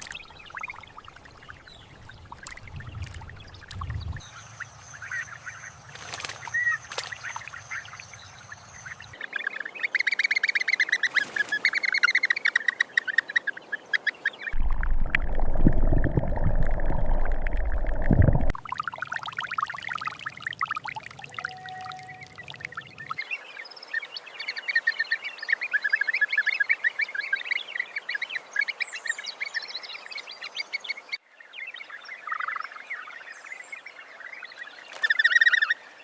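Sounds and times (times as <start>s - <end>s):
chattering bird calls: 3.5s - 9.8s.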